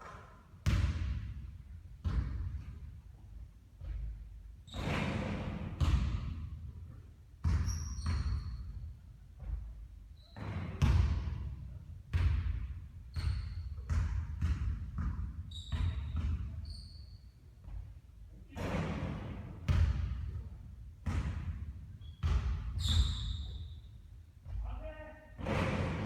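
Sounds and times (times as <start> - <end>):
basketball bouncing on court: 0.6 - 16.9, 17.6 - 23.8, 25.4 - 26.0
sneakers squeaking on floor: 3.8 - 5.3, 7.4 - 11.0, 13.0 - 19.2, 21.9 - 24.7.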